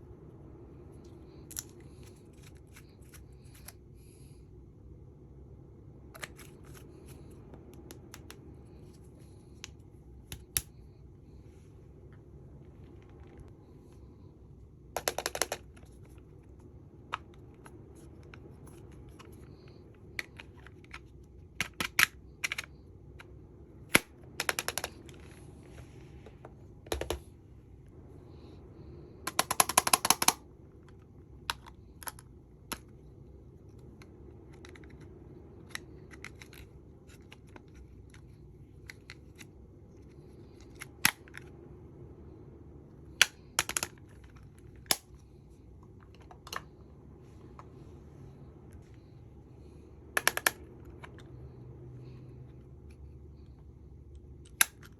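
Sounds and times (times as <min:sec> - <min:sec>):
plastic cases clicking and tapping: 0:15.0 - 0:15.9, 0:26.9 - 0:27.2, 0:29.3 - 0:30.4, 0:43.2 - 0:44.3, 0:50.2 - 0:51.2.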